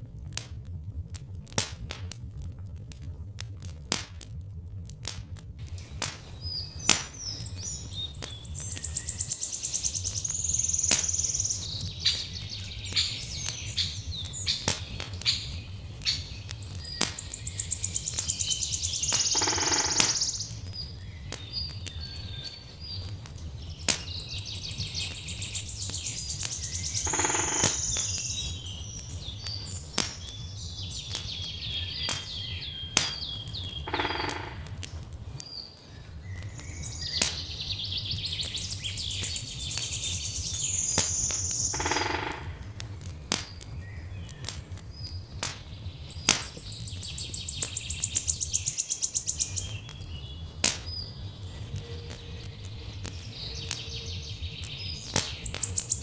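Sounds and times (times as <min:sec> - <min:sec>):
low rumble: 0:00.0 - 0:19.4
wood fire crackling: 0:00.0 - 0:56.0
songbirds chirping: 0:05.6 - 0:56.0.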